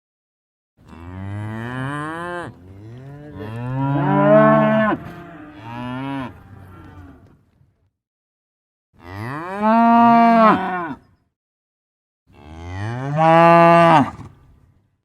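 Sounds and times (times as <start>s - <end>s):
cow mooing: 0.9s - 7.3s, 9.0s - 11.0s, 12.3s - 14.1s.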